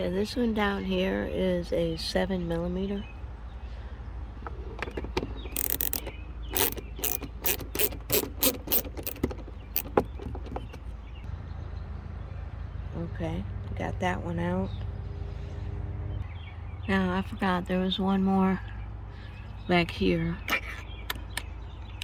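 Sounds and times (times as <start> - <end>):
ratchet clicking: 4.9 - 10.8.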